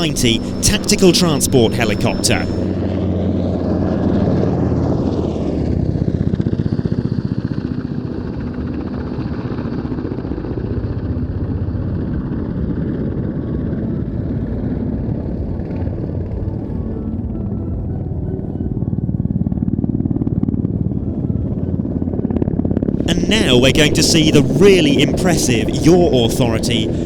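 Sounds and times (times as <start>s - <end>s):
helicopter rotor chopping: 0.0s - 2.8s, 23.0s - 27.0s
helicopter whine: 0.0s - 27.0s.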